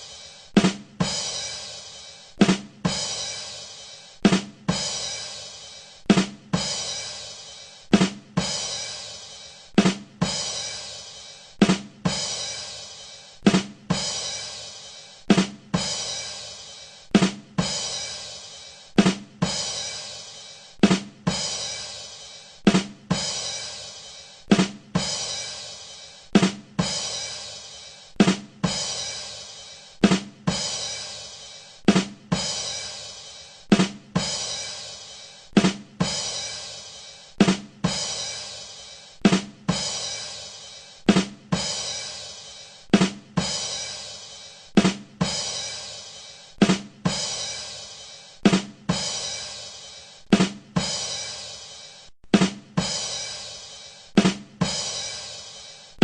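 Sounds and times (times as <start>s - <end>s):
drum hits: 44.8s - 45.6s, 48.4s - 49.3s, 52.2s - 53.3s, 54.1s - 55.2s.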